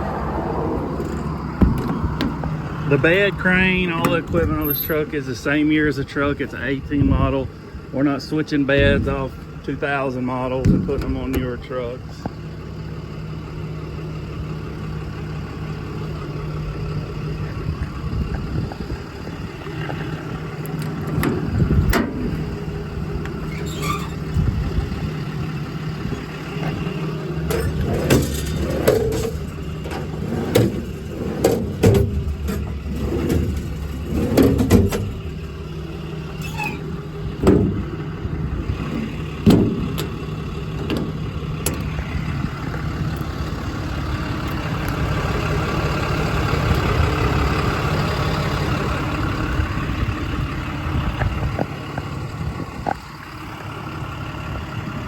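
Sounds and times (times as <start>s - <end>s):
diesel engine idling: 0.0s - 55.0s
short knocks and clunks: 1.0s - 2.6s, 27.5s - 35.4s, 36.6s - 38.0s, 39.4s - 40.2s.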